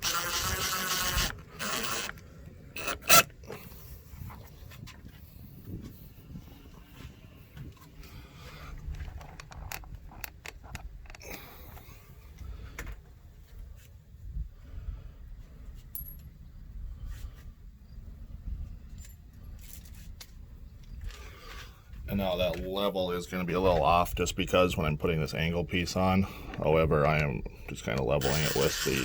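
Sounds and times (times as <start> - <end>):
scraping: 0.0 - 2.2, 2.8 - 3.4.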